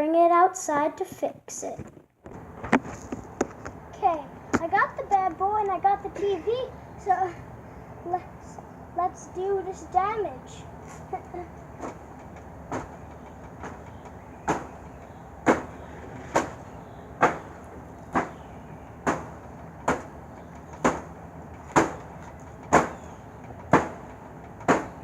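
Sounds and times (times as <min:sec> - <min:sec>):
blows knocking on a tv set: 0:12.7 - 0:14.8, 0:15.4 - 0:18.4, 0:19.0 - 0:20.1, 0:20.8 - 0:21.1, 0:21.7 - 0:22.1, 0:22.7 - 0:23.0, 0:23.7 - 0:25.0.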